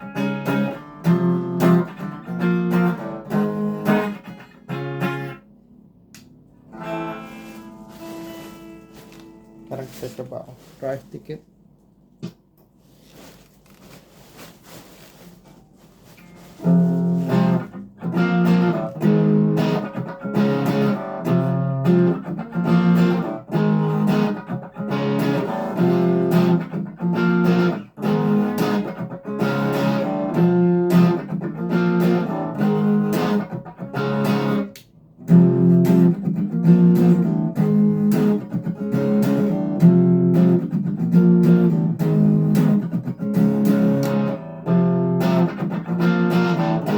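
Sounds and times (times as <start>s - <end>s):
overdriven electric guitar chords: 6.6s - 9.7s, 16.6s - 34.6s, 35.2s - 46.9s.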